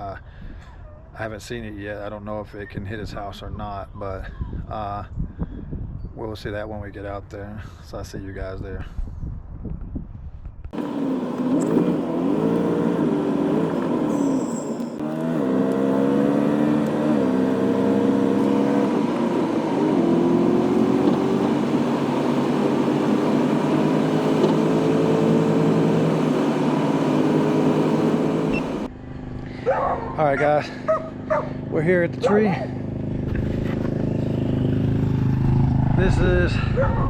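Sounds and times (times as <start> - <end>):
vehicle engine accelerating: 10.7 - 29.8, 30.8 - 37.0
road noise: 10.7 - 37.0.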